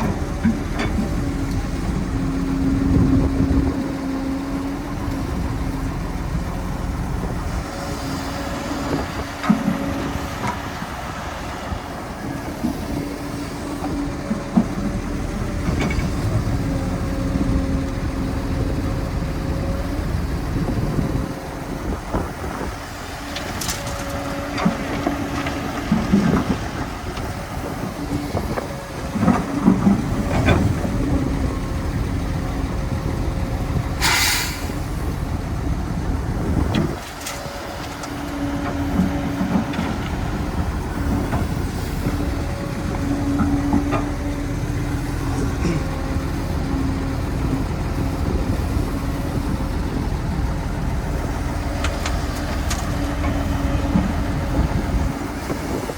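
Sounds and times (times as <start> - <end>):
diesel machinery humming: 0.0 - 55.9
short hiss: 34.0 - 34.8.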